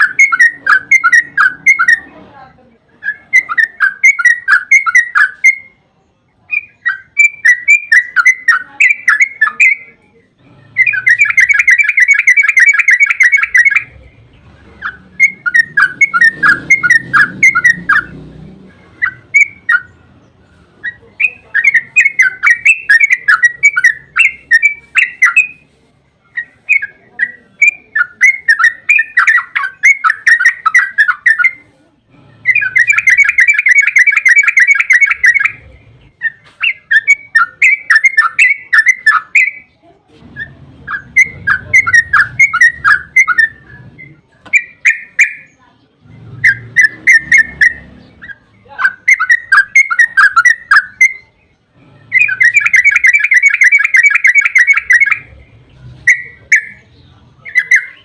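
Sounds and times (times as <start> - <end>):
bulbul singing: 0.0 - 58.0.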